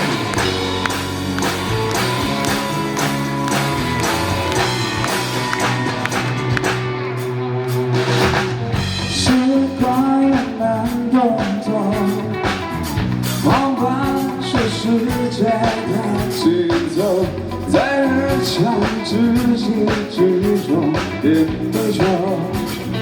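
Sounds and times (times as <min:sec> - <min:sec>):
live rock band playing: 0:00.0 - 0:23.0
steady drum beat: 0:00.0 - 0:23.0
person singing: 0:09.1 - 0:12.6, 0:13.4 - 0:22.7.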